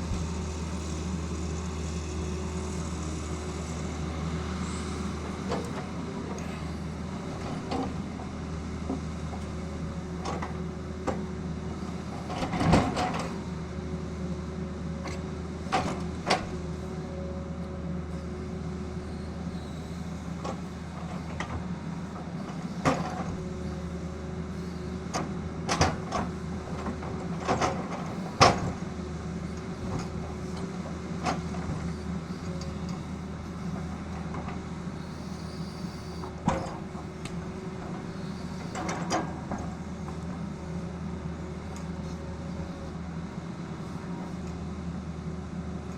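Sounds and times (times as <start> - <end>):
excavator engine running: 0.0 - 45.9.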